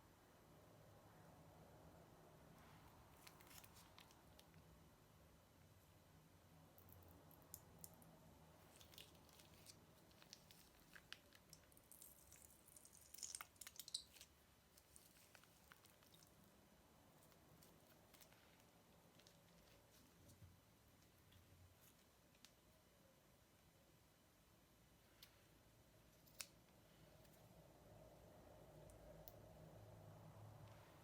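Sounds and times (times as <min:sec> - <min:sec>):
slime squishing and crackling: 0:08.6 - 0:16.5.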